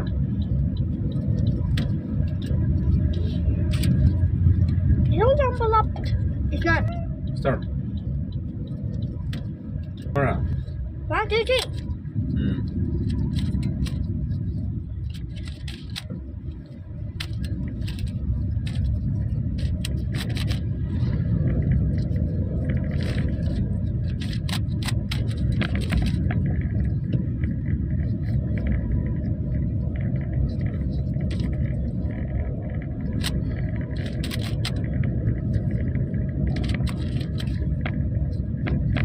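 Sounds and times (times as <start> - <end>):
steady low rumble: 0.0 - 39.0
puzzle cube clicking and scraping: 22.8 - 26.5, 36.5 - 38.0.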